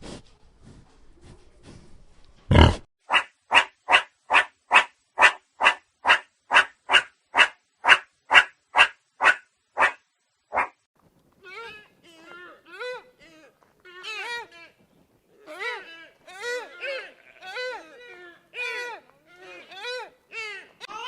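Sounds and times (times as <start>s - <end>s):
animal barking calls: 2.5s - 10.8s, 15.4s - 21.0s.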